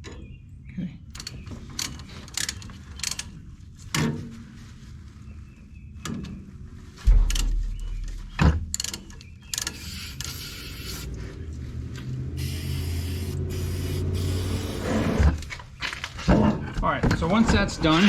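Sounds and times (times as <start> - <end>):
heavy thump: 7.0 - 8.8
sharp metal clanks: 7.1 - 9.8.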